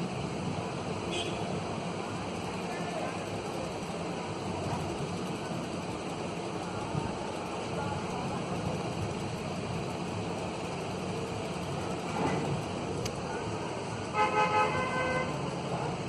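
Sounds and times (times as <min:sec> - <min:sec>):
vehicle horn toots: 0:01.1 - 0:01.4, 0:14.1 - 0:15.4.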